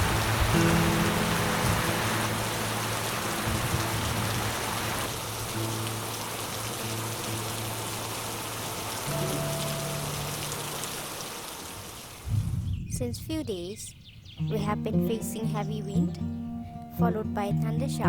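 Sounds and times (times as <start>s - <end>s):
heavy rain: 0.0s - 12.7s
soft background music: 9.1s - 10.7s, 14.4s - 18.0s.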